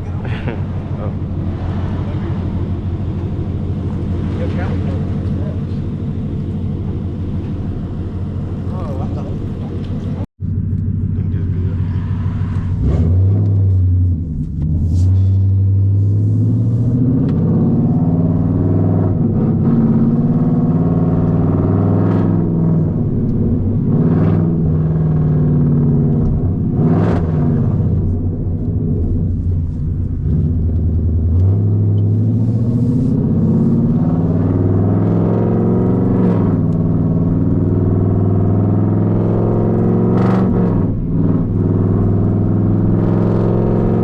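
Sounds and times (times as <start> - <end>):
car engine rumbling while driving: 0.0 - 44.0.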